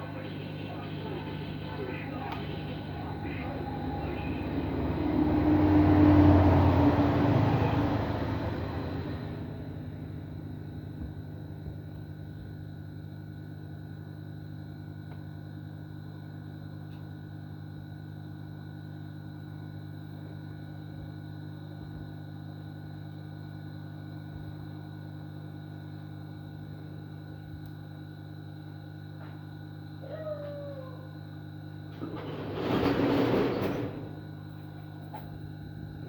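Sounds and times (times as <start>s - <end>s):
thin whining tones: 0.0s - 9.7s
electrical hum: 0.0s - 36.0s.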